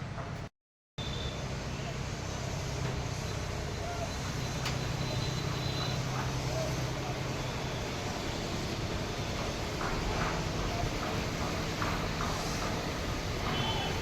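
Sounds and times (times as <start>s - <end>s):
outdoor background noise: 0.0s - 14.0s.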